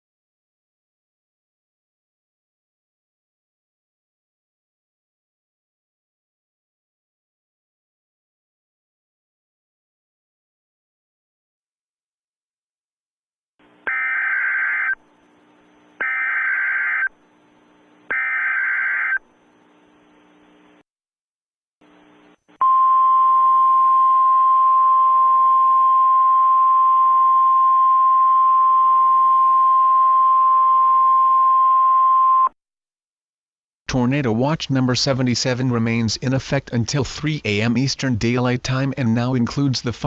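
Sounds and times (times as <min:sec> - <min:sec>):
data tone bursts: 0:13.9 - 0:15.0, 0:16.0 - 0:17.1, 0:18.1 - 0:19.2
steady warning alarm tone: 0:13.9 - 0:15.0, 0:16.0 - 0:17.1, 0:18.1 - 0:19.2.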